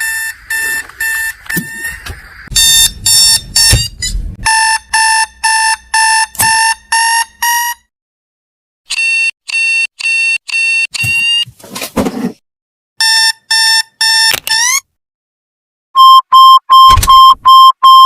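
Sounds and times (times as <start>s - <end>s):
alarm clock beeping: 0.0s - 7.9s, 8.9s - 11.4s, 13.0s - 14.8s, 16.0s - 18.0s.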